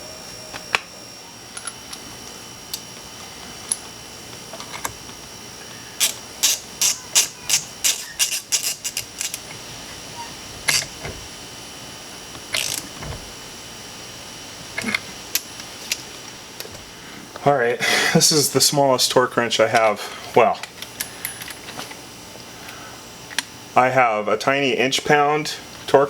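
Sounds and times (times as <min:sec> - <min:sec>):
hand ratchet rasping: 0:06.0 - 0:09.5, 0:12.5 - 0:13.0.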